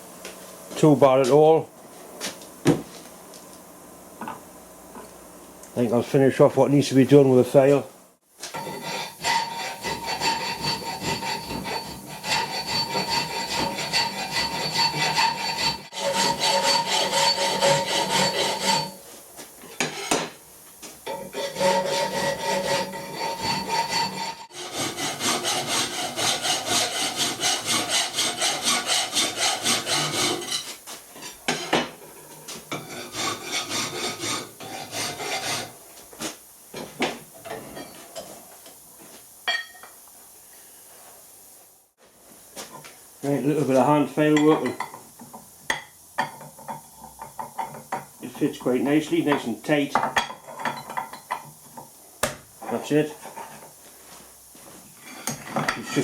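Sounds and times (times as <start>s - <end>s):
hand file rasping on steel: 8.6s - 19.0s, 19.8s - 20.2s, 21.1s - 30.8s, 32.7s - 35.8s
thin steady ringing note: 8.6s - 19.0s, 39.4s - 39.9s.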